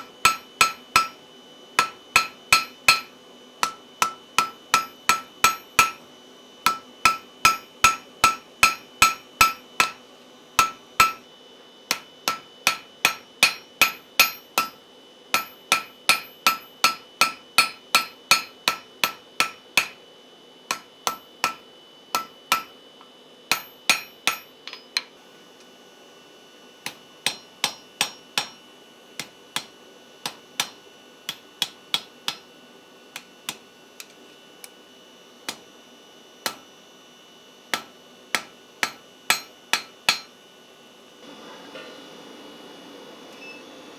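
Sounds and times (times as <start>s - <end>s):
hammer striking iron on anvil: 0.0s - 1.2s, 1.8s - 6.0s, 6.6s - 10.0s, 10.6s - 11.3s, 11.9s - 20.0s, 20.7s - 22.8s, 23.5s - 25.2s, 26.8s - 28.6s, 29.2s - 32.5s, 33.2s - 33.6s, 36.4s - 36.8s, 37.7s - 40.4s.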